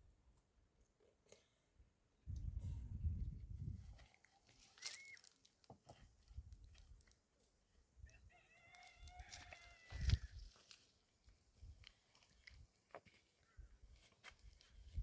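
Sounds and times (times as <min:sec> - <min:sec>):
rooster crowing: 0:08.0 - 0:10.4.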